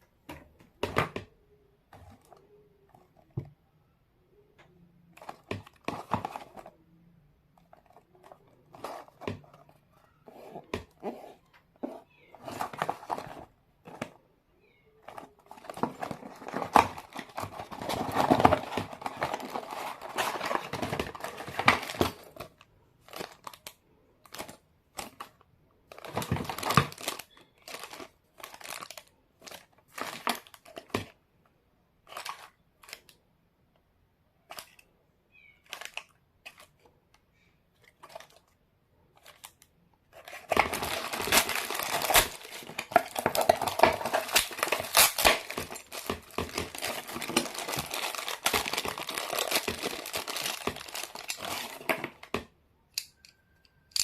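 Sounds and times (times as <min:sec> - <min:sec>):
plastic and cardboard crinkling: 0:05.1 - 0:06.8, 0:07.5 - 0:14.2, 0:14.9 - 0:31.2, 0:32.0 - 0:33.1, 0:35.4 - 0:52.5.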